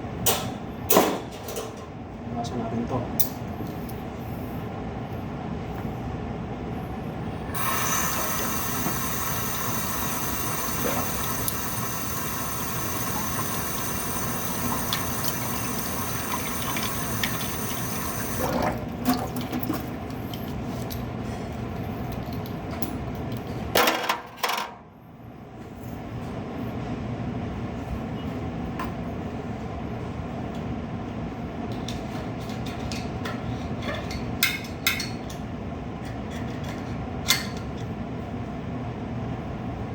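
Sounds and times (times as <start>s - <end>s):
water running through espresso machine: 7.6s - 19.0s.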